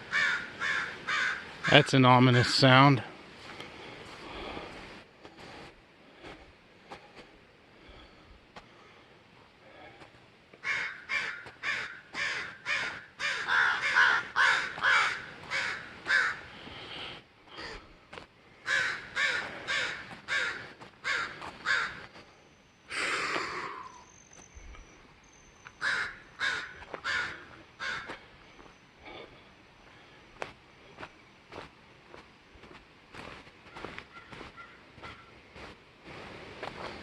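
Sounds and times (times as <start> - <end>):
crows cawing: 0.0 - 1.9, 10.6 - 16.7, 17.5 - 18.0, 18.6 - 22.2, 25.8 - 28.3, 33.7 - 35.4
drawn-out crow call: 0.0 - 1.9, 10.6 - 16.6, 17.5 - 18.0, 18.6 - 22.2, 25.8 - 28.3, 33.7 - 35.4.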